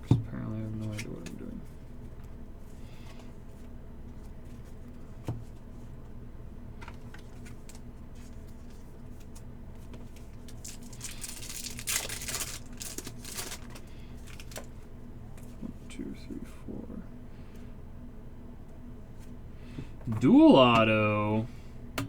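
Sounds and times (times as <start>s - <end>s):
plastic wrapper crinkling and tearing: 10.2s - 14.7s.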